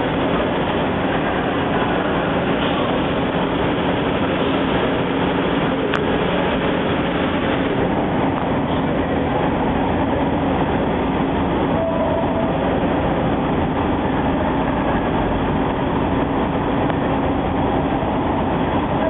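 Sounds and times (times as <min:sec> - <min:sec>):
brief higher tone: 0:11.7 - 0:12.7.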